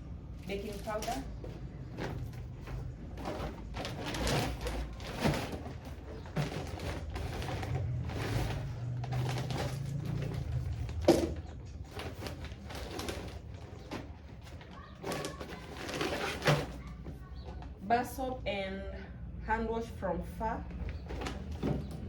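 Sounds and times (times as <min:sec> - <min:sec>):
packaging rustling: 0:00.5 - 0:17.6.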